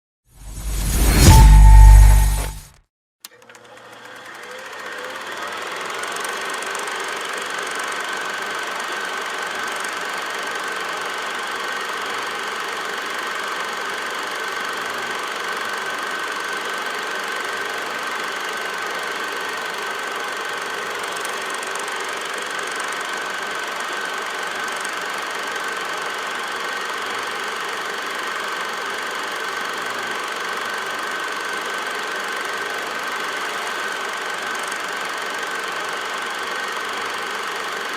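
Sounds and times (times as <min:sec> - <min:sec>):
film projector clattering: 0:03.3 - 0:37.9.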